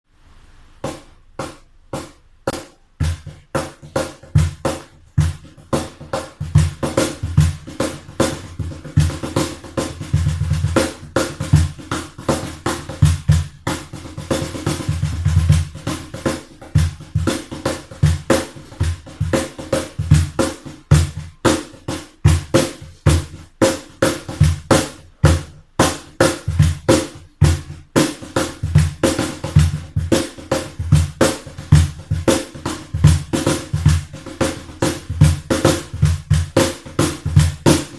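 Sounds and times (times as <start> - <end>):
cajon played by hand: 0.8 - 37.9.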